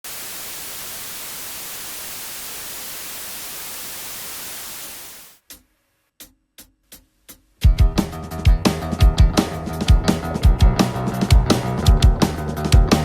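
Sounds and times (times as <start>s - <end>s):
static hiss: 0.0s - 5.4s.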